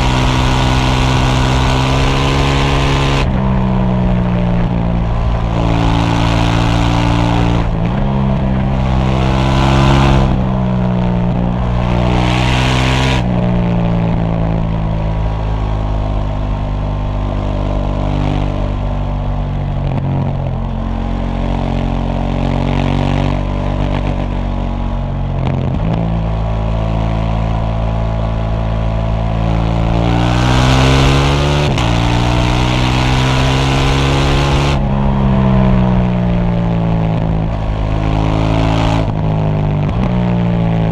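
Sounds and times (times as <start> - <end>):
motorcycle engine shifting gears: 0.0 - 40.9.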